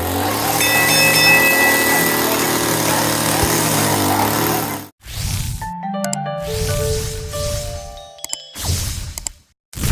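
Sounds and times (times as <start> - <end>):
held notes stepping in pitch: 5.7 - 8.4.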